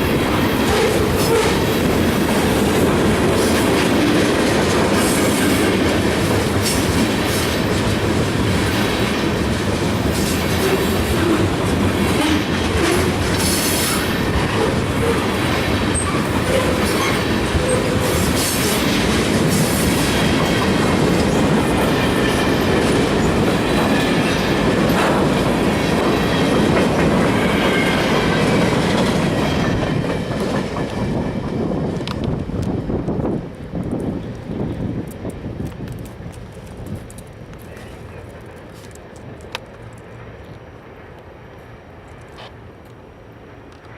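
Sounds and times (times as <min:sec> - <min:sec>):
freight train wheels rumbling: 0:00.0 - 0:43.9.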